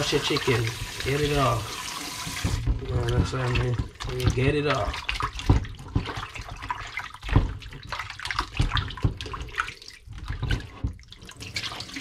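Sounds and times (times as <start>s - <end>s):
water splashing in a sink: 0.0s - 12.0s
knocks in a basin: 2.2s - 7.8s, 8.4s - 9.4s.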